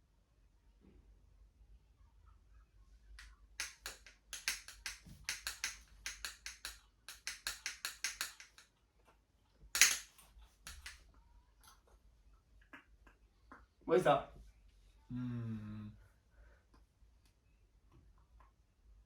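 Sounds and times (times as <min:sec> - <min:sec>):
quick sharp clicks: 0:03.6 - 0:08.6.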